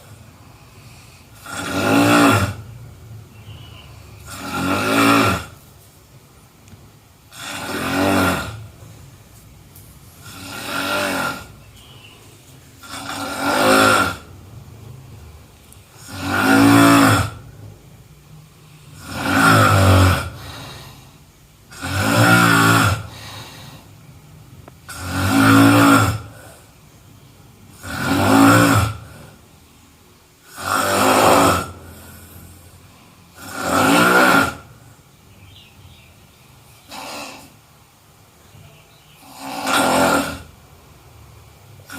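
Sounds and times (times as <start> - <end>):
quiet breathing: 0.0 - 1.8, 20.2 - 21.4, 23.0 - 25.1
person snoring: 0.3 - 2.7, 3.4 - 5.6, 7.3 - 8.7, 10.2 - 11.6, 12.8 - 14.3, 15.9 - 17.5, 18.9 - 23.9, 24.9 - 26.7, 27.7 - 29.4, 30.4 - 34.8, 36.8 - 37.6, 39.2 - 40.6.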